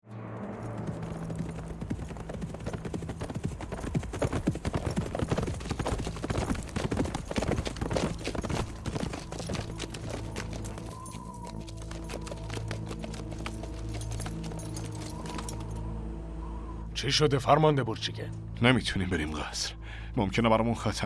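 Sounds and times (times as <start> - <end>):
low music drone: 0.0 - 4.7, 5.5 - 21.0
horse hoofbeats clattering: 0.8 - 15.8.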